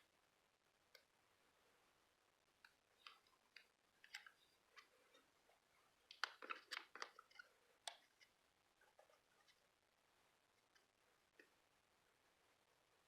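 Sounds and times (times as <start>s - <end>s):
paper clicks and crinkles: 6.1s - 8.3s.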